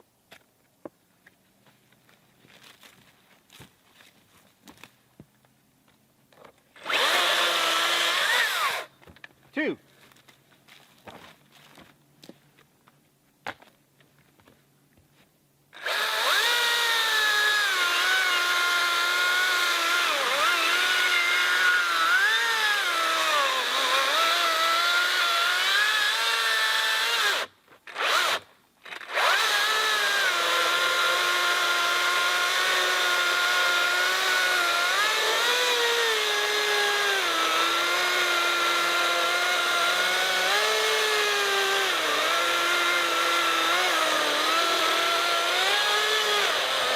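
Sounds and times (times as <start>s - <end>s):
electric chainsaw cutting log: 6.8s - 8.9s, 15.8s - 46.9s.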